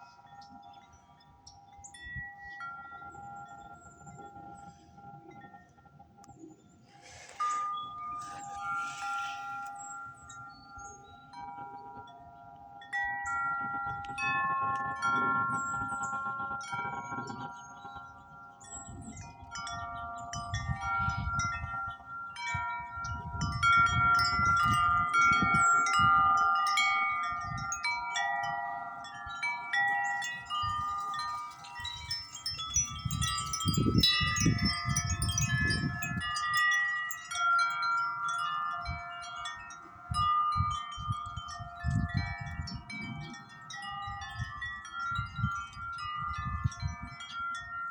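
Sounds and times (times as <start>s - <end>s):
wind chimes ringing: 0.0s - 47.9s
wind rumbling on microphone: 13.5s - 47.9s.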